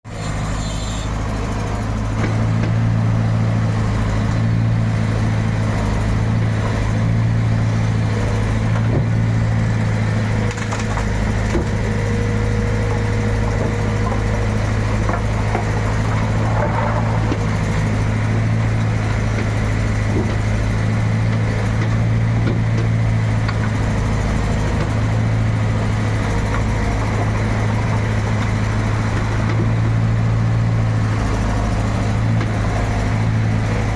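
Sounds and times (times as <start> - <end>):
backhoe diesel engine running: 0.0 - 33.9
wood knocking and cracking: 10.4 - 12.0.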